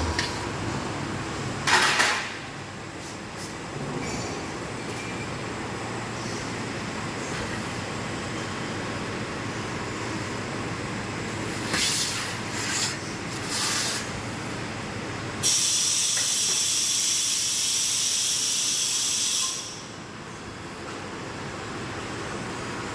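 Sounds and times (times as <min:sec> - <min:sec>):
bending machine humming: 0:00.0 - 0:01.7
loud high hiss: 0:15.4 - 0:19.9.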